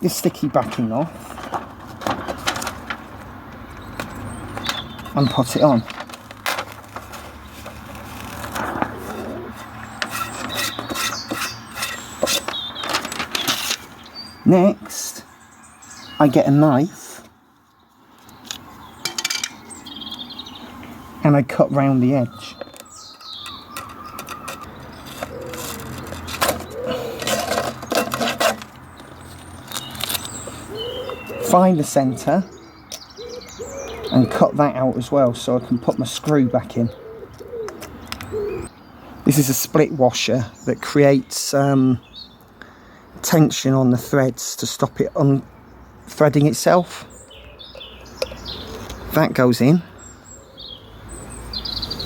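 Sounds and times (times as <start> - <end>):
birds calling: 0.0 - 52.0
knife cutting sanding pad: 8.9 - 12.6.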